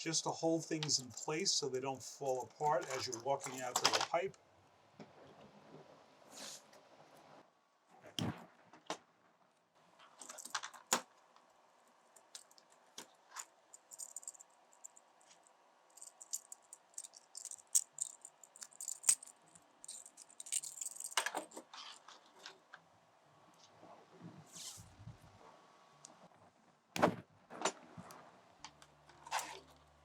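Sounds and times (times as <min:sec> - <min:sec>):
metal straps clinking and rattling: 0:10.0 - 0:11.0, 0:12.2 - 0:22.6.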